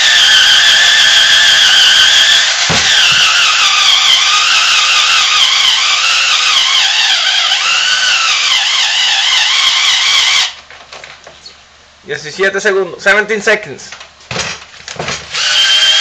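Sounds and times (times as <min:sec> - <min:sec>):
cordless drill grinding into rubber: 0:00.0 - 0:10.6, 0:14.3 - 0:16.0.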